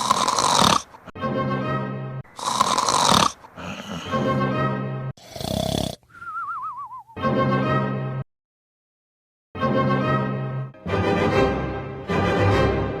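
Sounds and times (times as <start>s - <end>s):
man snoring loudly: 0.0s - 1.1s, 2.4s - 4.4s, 5.2s - 6.1s
music: 1.2s - 2.2s, 4.0s - 5.1s, 7.2s - 8.2s, 9.6s - 13.0s.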